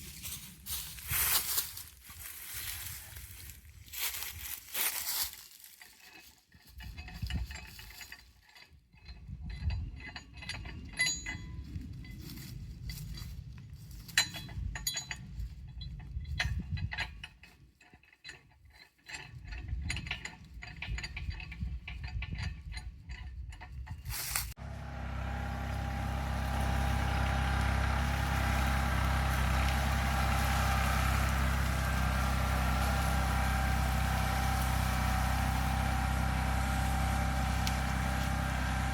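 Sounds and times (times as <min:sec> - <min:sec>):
tractor diesel engine running: 0:00.0 - 0:05.5, 0:24.1 - 0:38.9
rustling: 0:00.0 - 0:06.9
steel cable and clasp clinking: 0:04.6 - 0:24.6.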